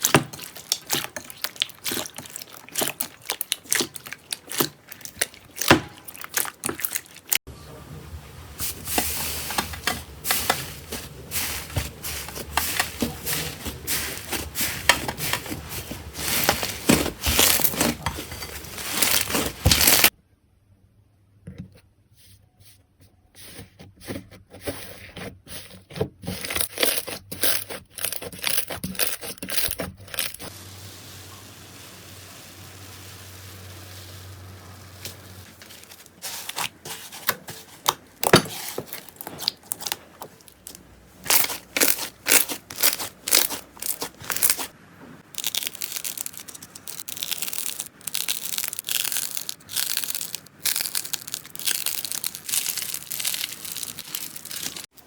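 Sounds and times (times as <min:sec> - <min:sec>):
slime crackling and popping: 0:00.0 - 0:07.4, 0:14.3 - 0:20.1, 0:39.0 - 0:54.9.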